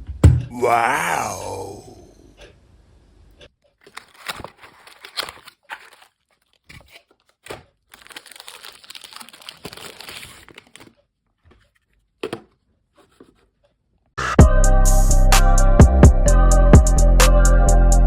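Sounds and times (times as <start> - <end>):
packaging rustling and crinkling: 3.8 - 12.1.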